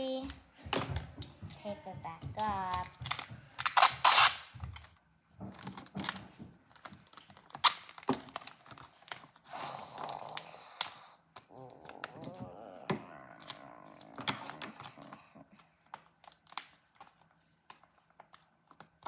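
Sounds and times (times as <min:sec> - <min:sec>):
sticky tape ripping off roll: 0:03.1 - 0:04.5, 0:07.5 - 0:08.6.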